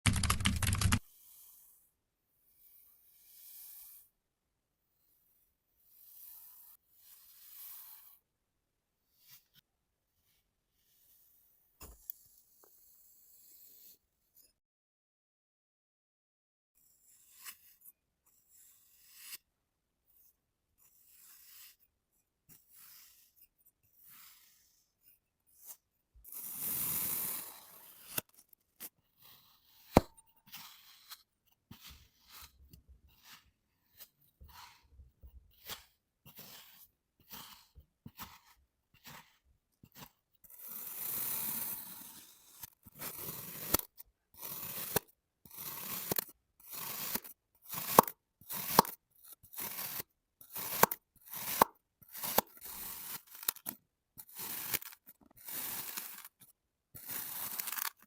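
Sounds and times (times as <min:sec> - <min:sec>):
knife slicing through sand: 0:25.6 - 0:28.3, 0:29.2 - 0:34.8, 0:35.6 - 0:56.4, 0:57.0 - 0:58.0.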